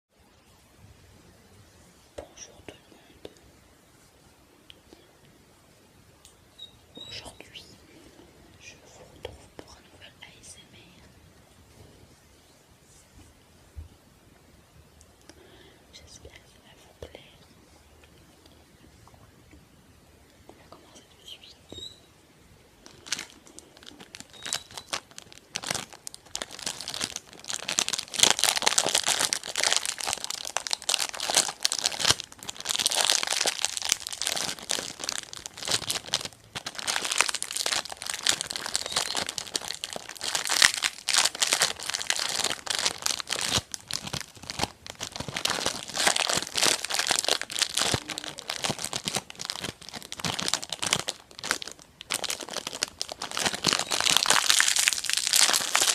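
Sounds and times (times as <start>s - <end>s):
crinkling and crumpling: 22.8s - 55.9s.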